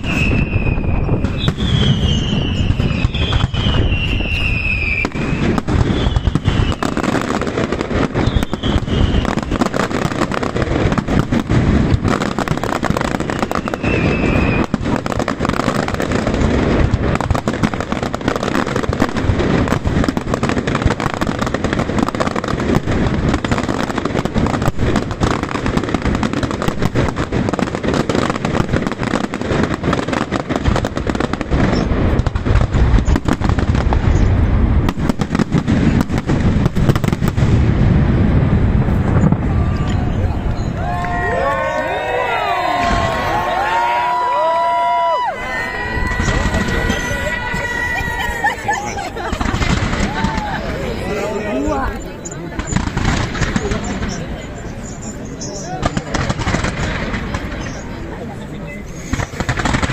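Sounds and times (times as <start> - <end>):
falling firework whistles: 0.0 - 10.3, 12.2 - 16.2, 31.6 - 32.0, 39.0 - 56.1, 58.8 - 59.7
fireworks bangs and crackling: 0.0 - 59.9.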